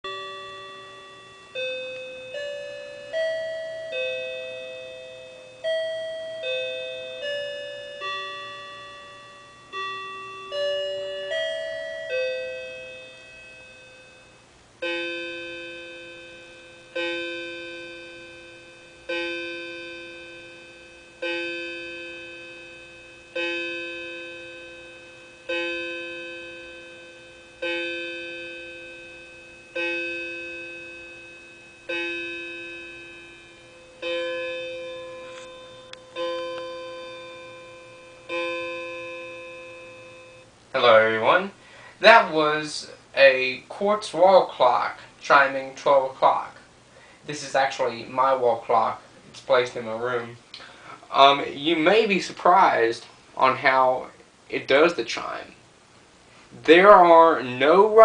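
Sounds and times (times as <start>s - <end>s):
music-box chime melody: 0.1s - 41.4s
clock striking the hour: 0.1s - 46.6s.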